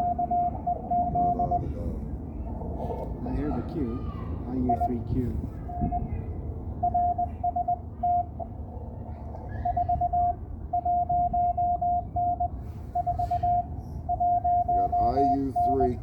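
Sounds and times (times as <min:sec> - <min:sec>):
morse code tone: 0:00.0 - 0:01.8, 0:04.6 - 0:06.1, 0:06.8 - 0:08.5, 0:09.7 - 0:16.0.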